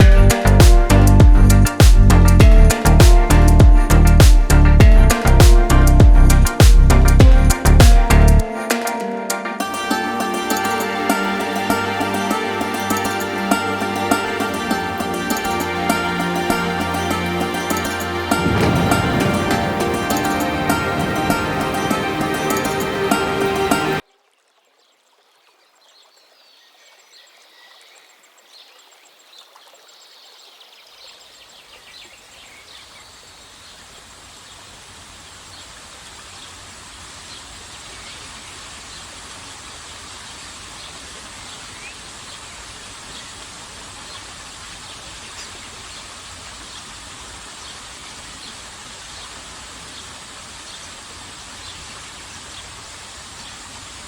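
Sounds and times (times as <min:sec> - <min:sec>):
waterfall roaring: 0:00.0 - 0:24.0.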